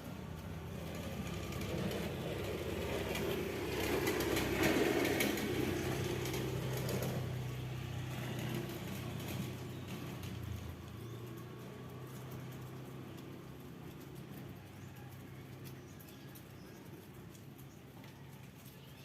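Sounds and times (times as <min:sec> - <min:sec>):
motor vehicle passing by: 0:00.0 - 0:19.0.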